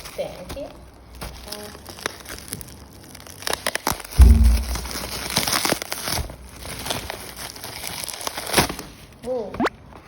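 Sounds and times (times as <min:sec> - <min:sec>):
plastic packaging crinkling: 0:00.0 - 0:09.2
loud low thump: 0:04.2 - 0:05.3.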